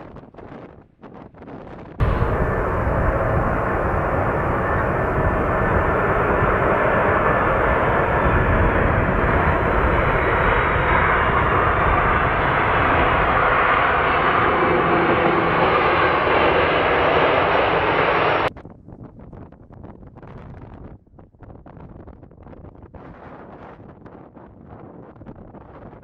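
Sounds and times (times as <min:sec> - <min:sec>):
jet engine rush: 0:02.0 - 0:18.5.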